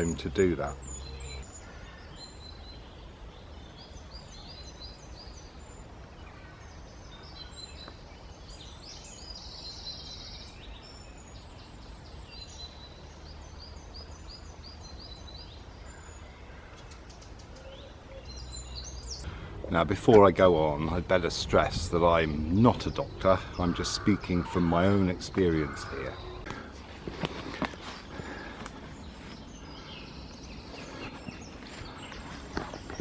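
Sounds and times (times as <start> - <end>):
small birds chirping: 0.0 - 33.0
steady low rumble: 19.0 - 33.0.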